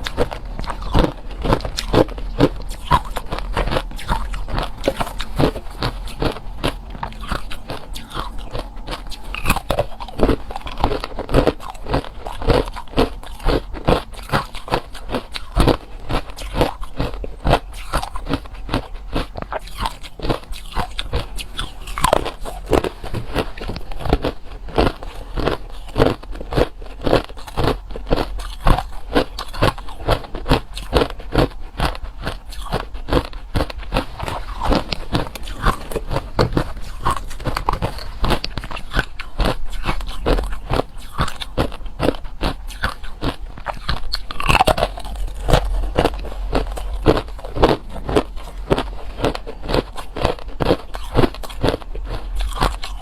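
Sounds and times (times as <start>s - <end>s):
ice crunching between teeth: 0.0s - 53.0s.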